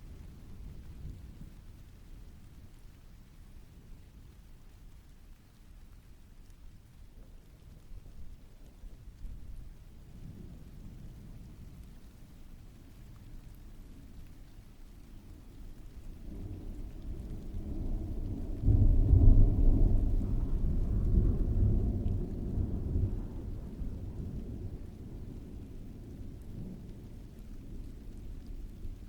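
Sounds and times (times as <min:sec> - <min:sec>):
heavy rain: 0:00.0 - 0:29.0
rolling thunder: 0:15.9 - 0:29.0.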